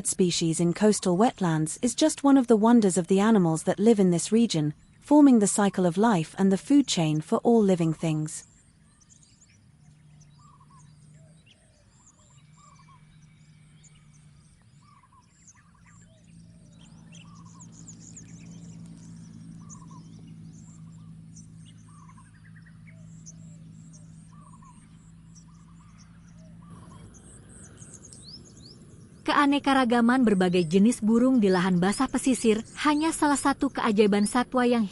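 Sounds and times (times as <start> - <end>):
birds chirping: 0.0 - 34.9
low steady hum: 0.0 - 34.9.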